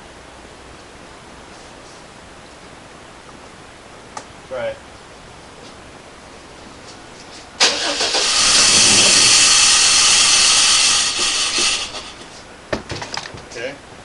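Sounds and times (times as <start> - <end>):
car engine starting and running: 7.6 - 12.4
loud rushing intake: 7.6 - 12.4.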